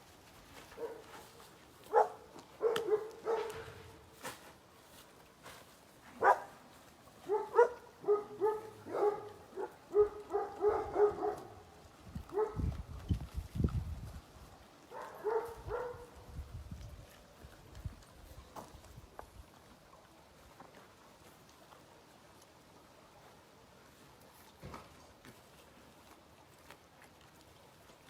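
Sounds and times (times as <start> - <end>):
dog barking: 0.8 - 1.1, 1.9 - 3.8, 6.2 - 6.6, 7.3 - 11.6, 12.3 - 12.6, 14.9 - 16.1.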